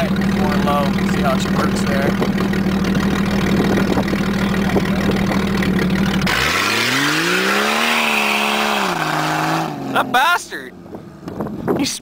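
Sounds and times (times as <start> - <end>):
car engine idling and revving: 0.0 - 12.0.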